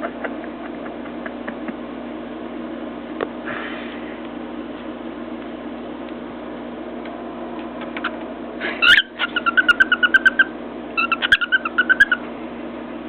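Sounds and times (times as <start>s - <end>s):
cockatiel chirping: 8.8s - 12.2s.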